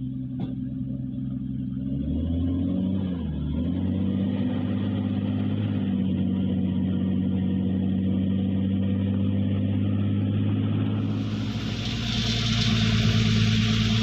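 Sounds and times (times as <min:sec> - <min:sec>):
heavy machine diesel engine running: 0:10.9 - 0:14.0.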